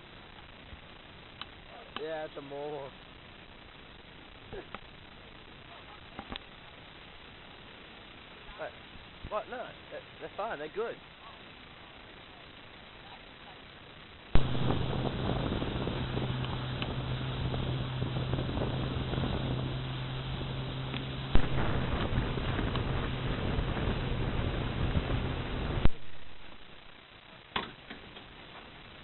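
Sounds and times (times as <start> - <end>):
wind on microphone: 14.3 - 26.7
engine humming: 14.3 - 27.0.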